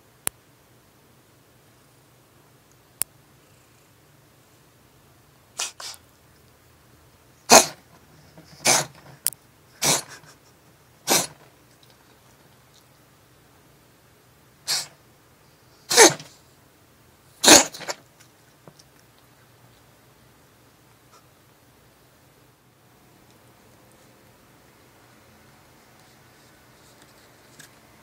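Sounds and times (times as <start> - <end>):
cat sneezing: 5.6 - 6.0, 7.4 - 11.5, 14.6 - 15.0, 15.8 - 16.4, 17.4 - 18.1.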